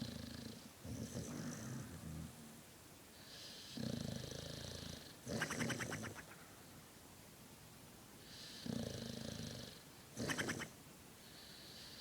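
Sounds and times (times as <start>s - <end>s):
dog snoring: 0.0s - 2.4s, 3.3s - 6.2s, 8.3s - 10.7s.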